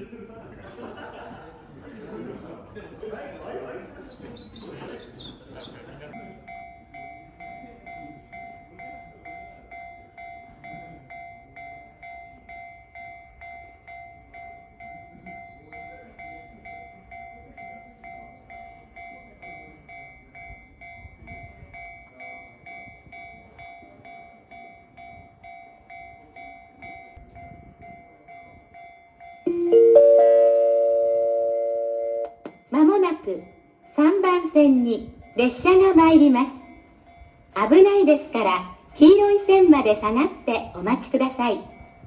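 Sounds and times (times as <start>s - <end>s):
level-crossing alarm two-tone ding: 29.3s - 32.4s
loud station chime: 29.5s - 32.4s.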